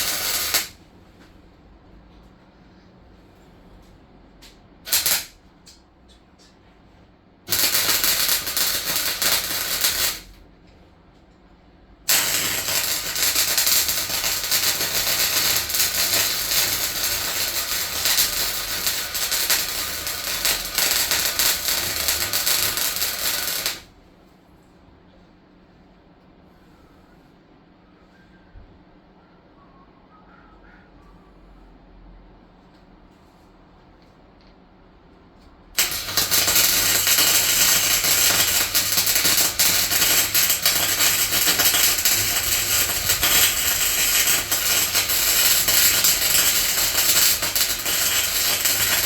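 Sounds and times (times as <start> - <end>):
welding arc crackling: 0.0 - 0.8, 4.9 - 5.4, 7.5 - 10.4, 12.1 - 23.9, 35.8 - 49.0.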